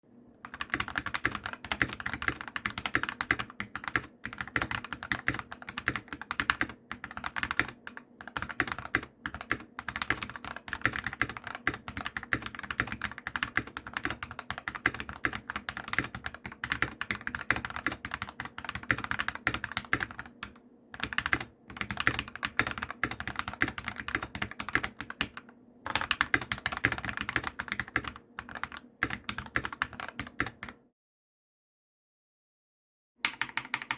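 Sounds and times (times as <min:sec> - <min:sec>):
mechanical keyboard typing: 0:00.4 - 0:30.8, 0:33.2 - 0:33.9.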